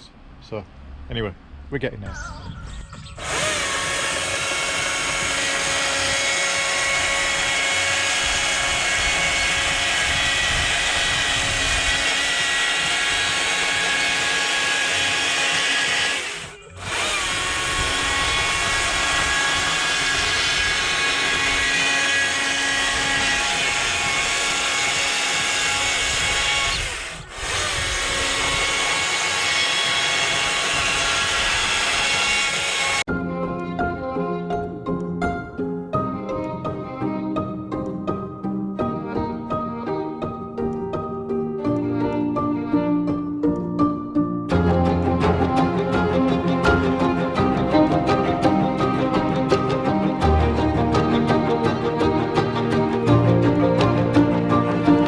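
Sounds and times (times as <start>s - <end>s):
chainsaw cutting wood: 3.2s - 33.1s.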